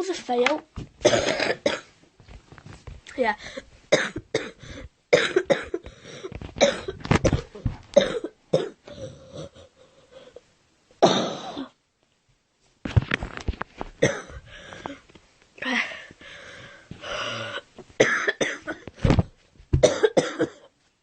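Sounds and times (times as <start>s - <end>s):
woman coughing: 1.0s - 1.9s, 3.9s - 5.8s, 6.6s - 9.6s, 11.0s - 11.8s, 14.0s - 14.4s, 17.4s - 18.9s, 19.8s - 20.7s.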